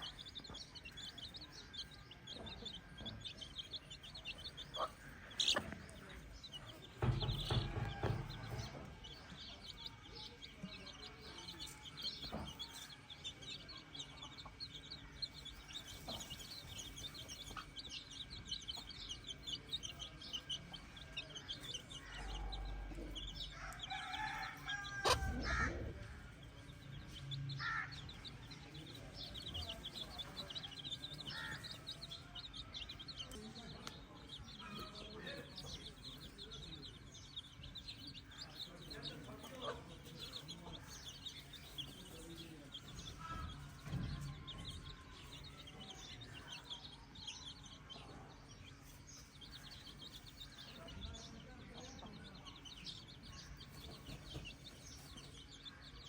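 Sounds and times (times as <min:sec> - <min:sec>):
chickens clucking: 0:00.0 - 0:56.0
rooster crowing: 0:23.5 - 0:25.8.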